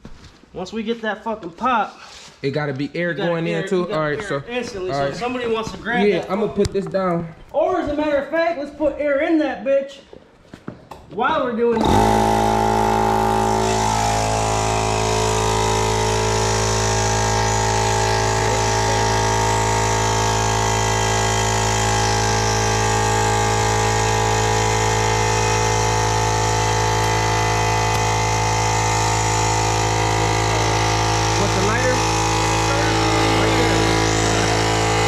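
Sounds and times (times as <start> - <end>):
air compressor running: 11.8 - 35.0.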